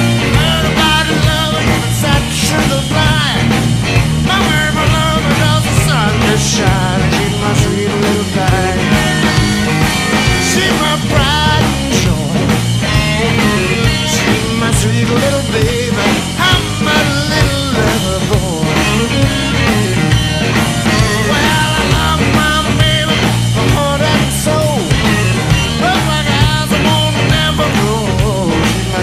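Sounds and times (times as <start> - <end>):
rock music with singing: 0.0 - 29.0.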